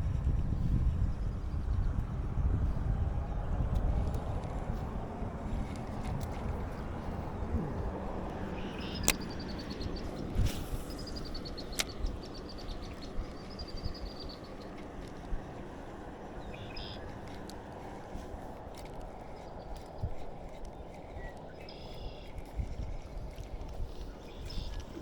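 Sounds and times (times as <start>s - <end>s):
water around a boat: 0.0s - 25.0s
wind: 0.0s - 25.0s
bird trilling high ticks: 8.2s - 15.6s, 16.4s - 18.0s, 18.7s - 22.7s, 24.0s - 25.0s
sharp clicks: 8.6s - 9.9s, 11.1s - 12.1s.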